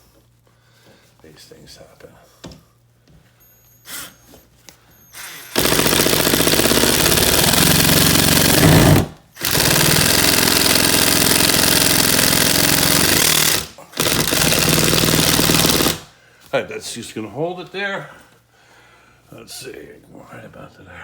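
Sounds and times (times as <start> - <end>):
power screwdriver rattling: 5.2 - 16.1.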